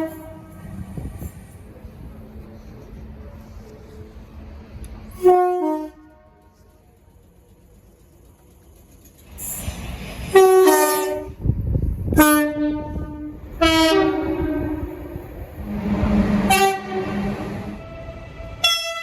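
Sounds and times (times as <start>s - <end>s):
multi-note train horn blasts: 0.0s - 0.8s, 5.1s - 6.5s, 10.3s - 11.4s, 12.1s - 19.0s
train rumble: 0.0s - 19.0s.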